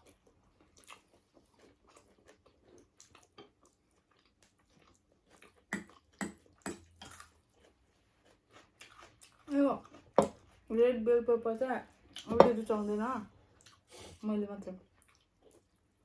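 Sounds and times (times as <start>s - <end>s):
chewing with wet clicks: 0.0s - 10.6s, 13.5s - 13.9s, 14.8s - 16.0s.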